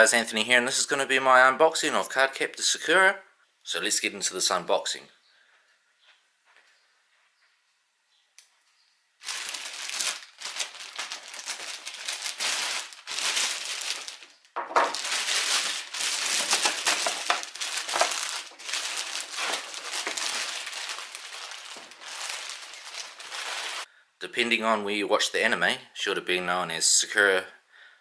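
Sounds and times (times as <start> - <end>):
packaging being crinkled: 9.2 - 23.9.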